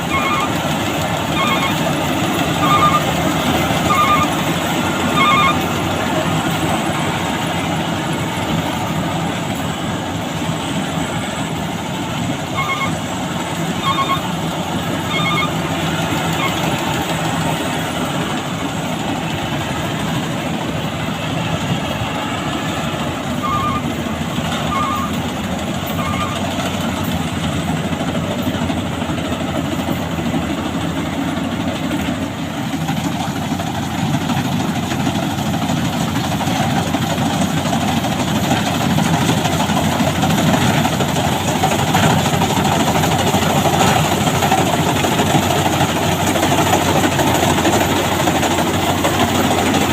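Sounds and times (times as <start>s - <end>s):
combine harvester running: 0.0s - 49.9s
short beeps: 3.9s - 4.4s, 5.1s - 5.7s, 12.6s - 13.0s, 13.8s - 14.3s, 15.1s - 15.6s.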